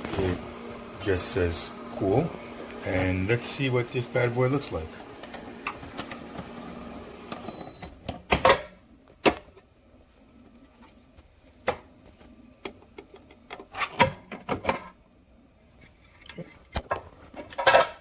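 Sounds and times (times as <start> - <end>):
machine hum: 0.0 - 7.8.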